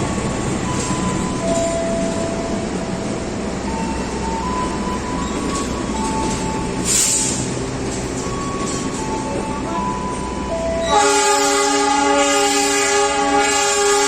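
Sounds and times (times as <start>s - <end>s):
train rumble and rail noise: 0.0s - 14.0s
short hiss: 6.8s - 7.5s.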